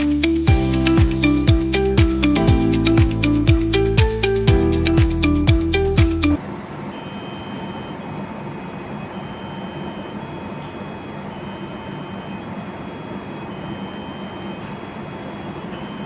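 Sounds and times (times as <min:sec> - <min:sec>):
machine whirring with low hum: 0:06.4 - 0:16.0.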